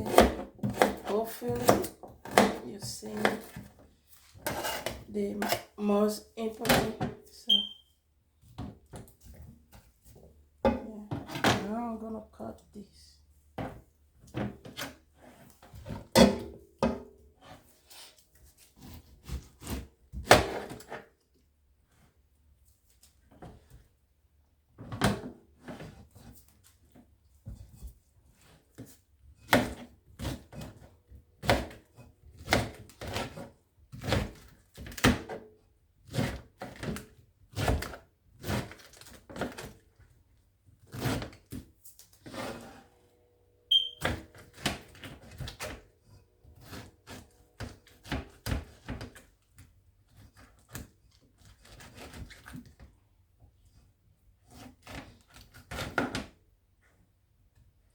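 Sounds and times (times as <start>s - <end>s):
knife chopping on cutting board: 0.0s - 2.6s.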